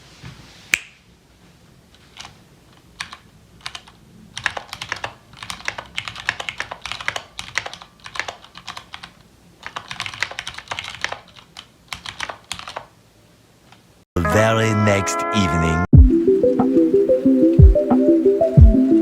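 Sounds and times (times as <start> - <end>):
mechanical keyboard typing: 2.1 - 12.9.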